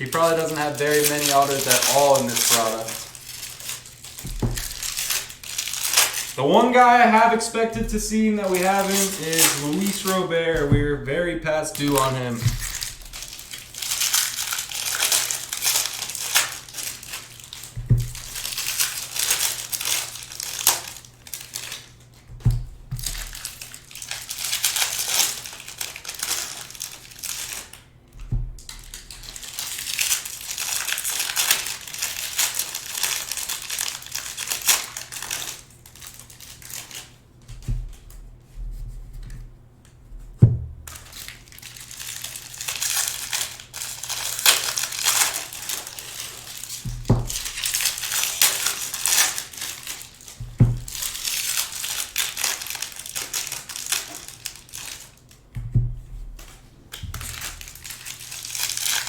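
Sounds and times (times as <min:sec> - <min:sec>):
card pack wrappers crinkling: 0:00.0 - 0:38.0, 0:40.9 - 0:55.5, 0:56.4 - 0:59.0
soft thuds on a table: 0:04.3 - 0:04.8.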